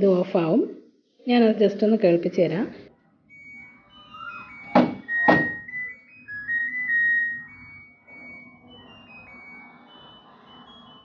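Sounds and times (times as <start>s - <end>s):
electronic beeping tune: 3.2s - 11.0s
door lock clunks: 4.7s - 5.6s.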